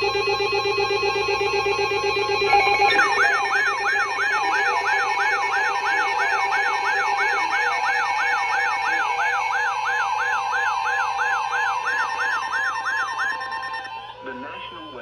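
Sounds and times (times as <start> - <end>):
low pulsing beep: 0.0 - 15.0
warbling siren alarm: 0.0 - 15.0
steady held alert tones: 2.5 - 14.0.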